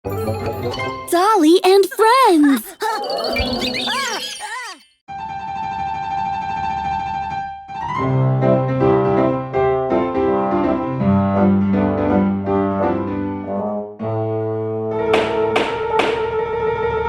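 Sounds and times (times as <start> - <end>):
piano and brass intro music: 5.1 - 16.8
sharp knocks: 15.2 - 16.4.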